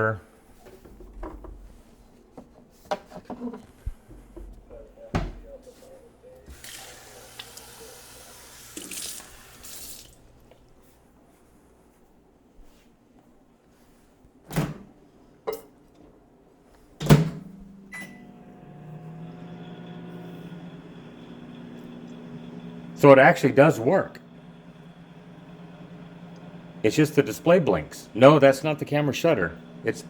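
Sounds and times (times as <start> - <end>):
microwave oven humming: 3.8 - 10.8, 17.0 - 30.0
tap water running into a cup: 6.5 - 10.3
short beep: 17.9 - 18.2.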